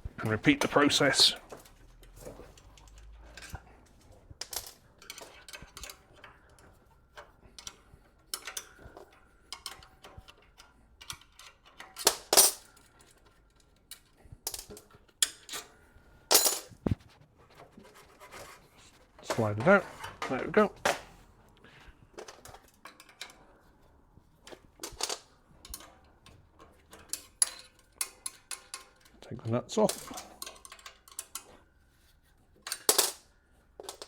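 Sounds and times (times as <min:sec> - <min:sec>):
metal clinks and knocks: 0:01.3 - 0:16.8, 0:24.4 - 0:29.2, 0:29.8 - 0:31.5, 0:32.6 - 0:34.0.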